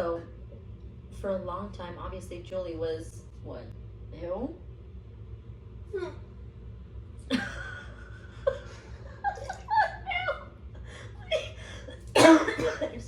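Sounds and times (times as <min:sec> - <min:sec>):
woman giggling: 0:07.3 - 0:12.0.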